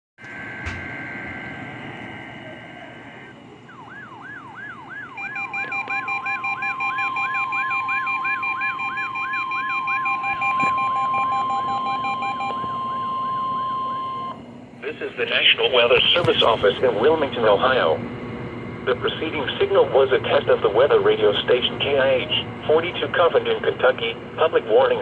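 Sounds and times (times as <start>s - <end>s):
steady warning alarm tone: 0.2s - 14.4s, 15.2s - 25.0s
whooping alarm siren: 0.2s - 14.4s
rapid pulsing beep: 4.9s - 14.4s.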